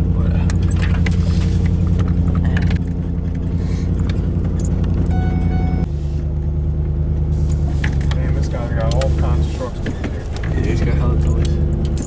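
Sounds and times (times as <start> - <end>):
vehicle engine droning: 0.0 - 12.0
short pitched tone: 5.1 - 5.9.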